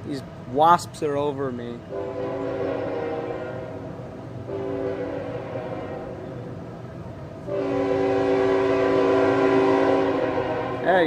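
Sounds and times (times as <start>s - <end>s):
locomotive air horn blasts: 1.9s - 6.5s, 7.5s - 11.0s.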